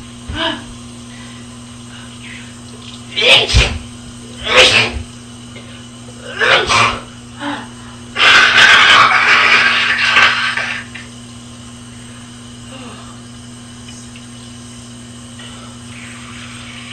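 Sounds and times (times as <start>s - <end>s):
person sneezing: 3.2s - 3.8s, 4.4s - 5.0s, 6.2s - 7.1s.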